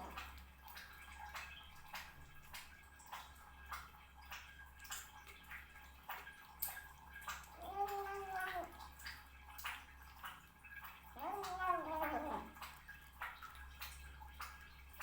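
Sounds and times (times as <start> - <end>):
cat eating noisily: 10.3 - 14.6.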